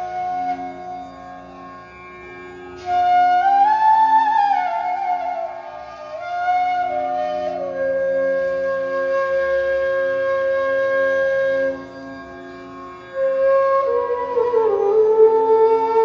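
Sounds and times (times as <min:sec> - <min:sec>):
flute playing slow notes: 0:00.0 - 0:02.0, 0:02.8 - 0:12.2, 0:13.0 - 0:16.0.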